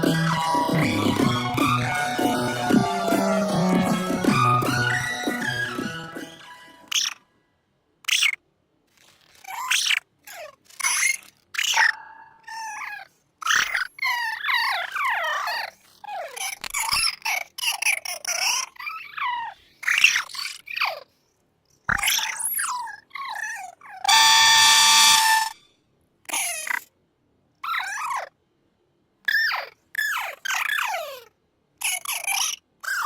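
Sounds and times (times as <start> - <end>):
squeaky chirping voice: 0.0 - 7.2, 8.1 - 8.4, 9.4 - 21.2, 21.9 - 25.7, 26.3 - 26.9, 27.6 - 28.4, 29.2 - 33.0
harsh buzzing tone: 24.1 - 25.6.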